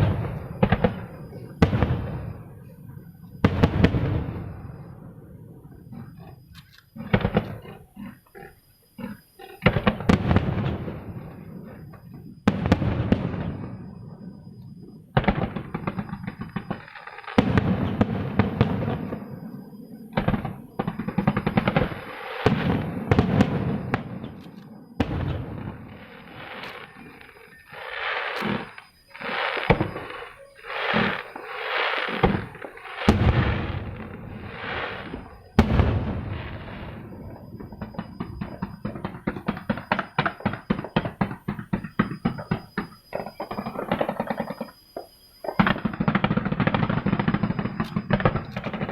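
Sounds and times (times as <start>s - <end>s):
aerial fireworks bursting: 15.1s - 44.8s.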